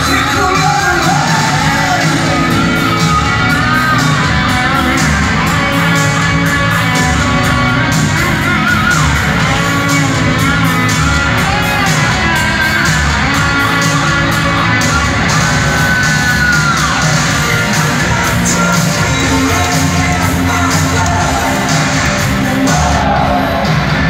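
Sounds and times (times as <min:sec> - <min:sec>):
rock band playing live: 0:00.0 - 0:24.0
lead guitar bent notes: 0:00.6 - 0:15.8.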